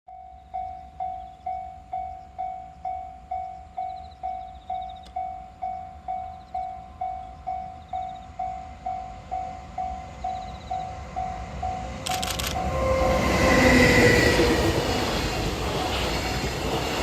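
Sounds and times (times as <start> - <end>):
level crossing warning bell: 0.1 - 12.0
approaching train rushing: 0.5 - 17.0
sharp clicks: 12.0 - 12.6.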